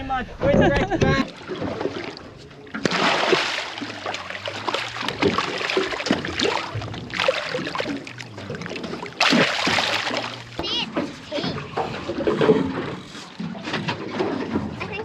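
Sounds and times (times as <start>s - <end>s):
water sloshing against a boat: 0.4s - 15.0s
small splashes and drips: 1.3s - 11.6s.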